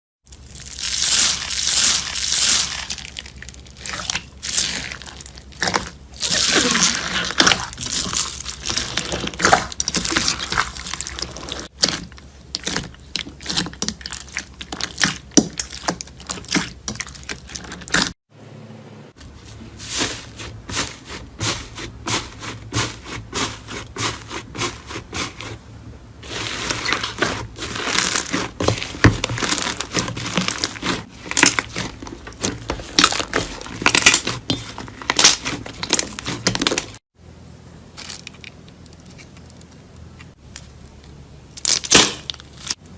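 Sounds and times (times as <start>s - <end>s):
slime crackling and popping: 0.3s - 18.1s, 26.8s - 37.0s.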